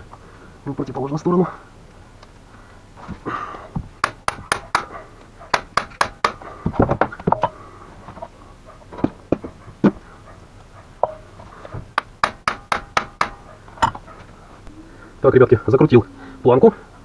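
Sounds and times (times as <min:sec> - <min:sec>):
hammer striking impact screwdriver: 0:04.0 - 0:04.9, 0:05.6 - 0:06.5, 0:12.0 - 0:13.5.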